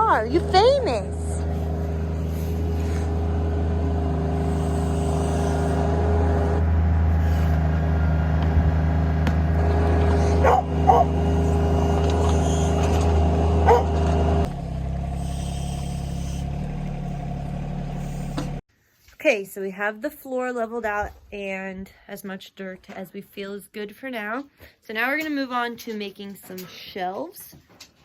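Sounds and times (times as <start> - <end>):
motor engine running: 0.0 - 18.6
dog barking: 10.3 - 11.2, 13.6 - 14.0.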